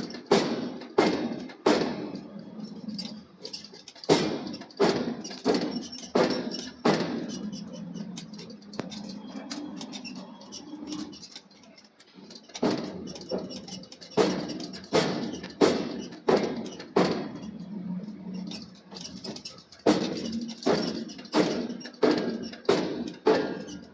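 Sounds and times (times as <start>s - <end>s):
hammer striking hot steel: 0.0s - 2.3s, 4.1s - 7.7s, 12.6s - 17.6s, 19.8s - 23.9s.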